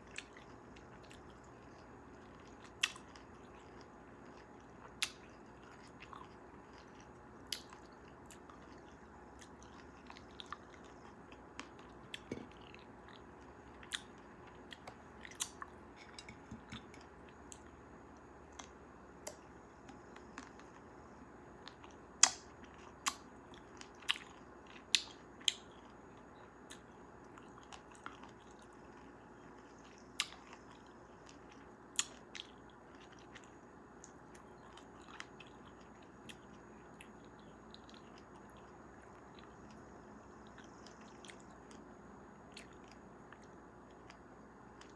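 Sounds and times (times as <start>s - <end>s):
chewing and biting cherries: 0.0s - 17.8s, 42.5s - 44.9s.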